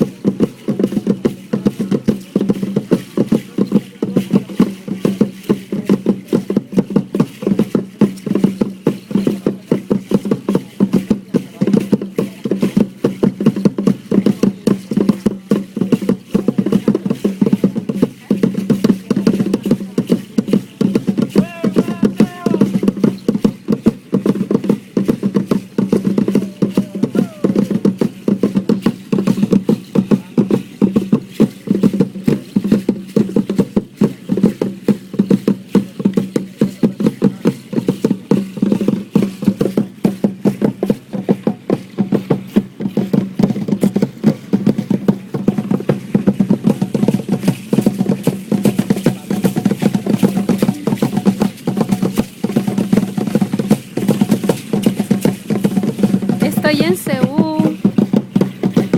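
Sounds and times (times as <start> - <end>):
drum beaten in fast rhythm: 0.0 - 58.9.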